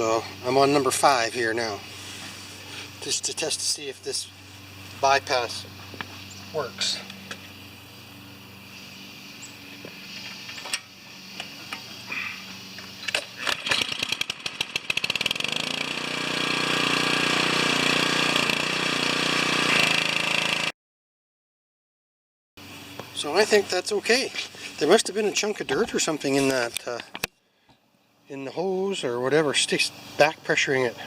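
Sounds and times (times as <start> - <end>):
gasoline engine starting and running: 9.6 - 20.7.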